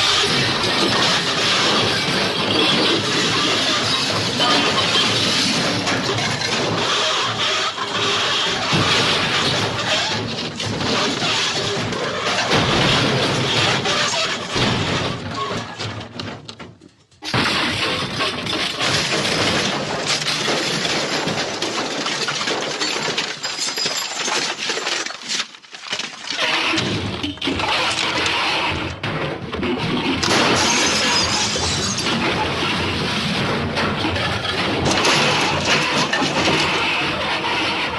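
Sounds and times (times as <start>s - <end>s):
crash of shattering and breaking: 0.0s - 37.9s.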